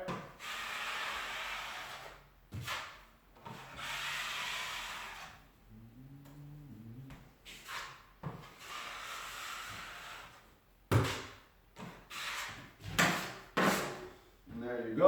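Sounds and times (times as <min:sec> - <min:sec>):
taping knife scraping drywall: 0:00.1 - 0:05.4, 0:07.4 - 0:14.1.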